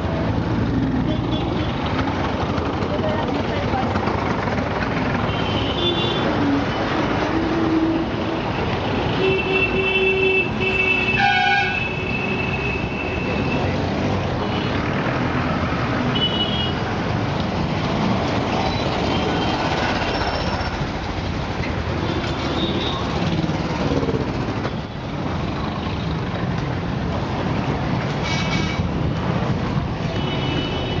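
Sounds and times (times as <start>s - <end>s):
road traffic: 0.0s - 31.0s
vehicle horns beeping: 9.2s - 13.6s.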